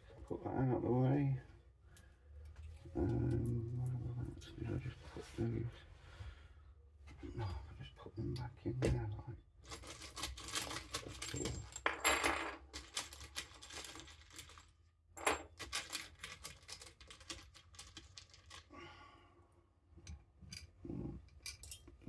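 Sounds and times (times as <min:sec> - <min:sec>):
metal screws clinking and rattling: 0:09.6 - 0:18.7, 0:21.3 - 0:22.0.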